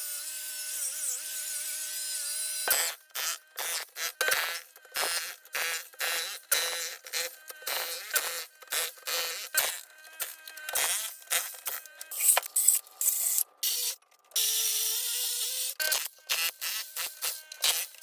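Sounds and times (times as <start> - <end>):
power tool breaking concrete: 0.0 - 18.0.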